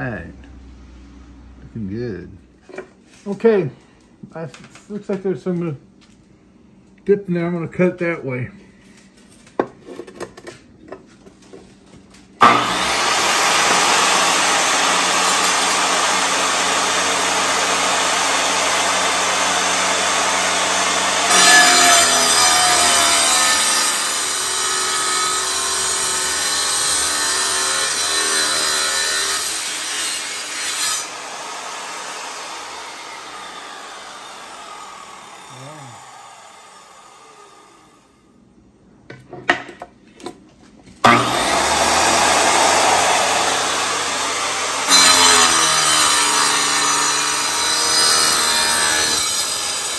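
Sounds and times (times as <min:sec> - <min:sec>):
power saw cutting stone: 0:12.4 - 0:38.1, 0:41.0 - 0:49.9.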